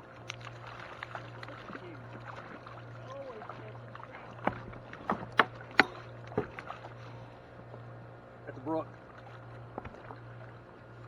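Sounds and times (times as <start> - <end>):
steady low hum: 0.0 - 11.0
sharp knocks on a kayak: 4.4 - 6.7.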